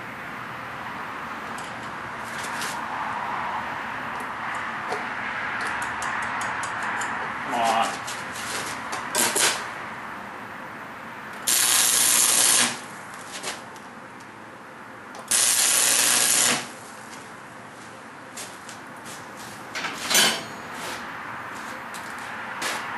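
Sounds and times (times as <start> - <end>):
arc welding crackle and hiss: 8.4 - 9.7, 11.3 - 13.8, 15.2 - 19.6.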